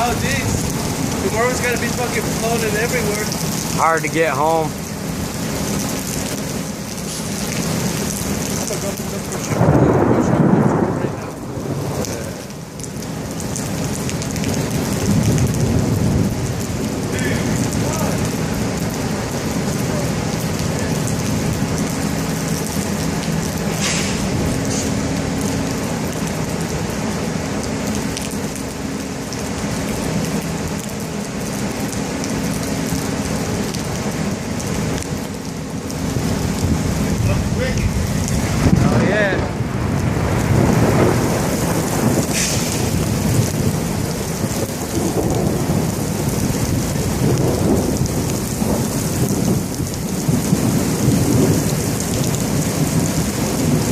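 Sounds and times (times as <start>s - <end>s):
low rumble of thunder: 0.0s - 2.7s, 7.6s - 27.5s, 31.5s - 53.9s
heavy rain falling: 0.0s - 53.9s
loud peal of thunder: 9.5s - 12.5s, 38.0s - 43.6s.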